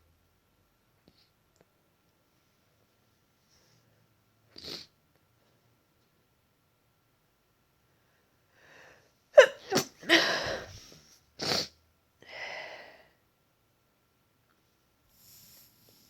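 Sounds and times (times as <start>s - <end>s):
woman sneezing: 9.4s - 10.8s.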